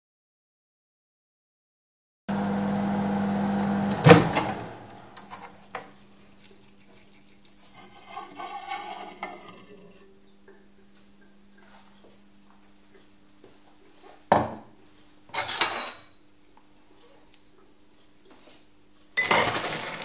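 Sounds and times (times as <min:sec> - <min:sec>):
microwave oven humming: 0:02.3 - 0:05.6.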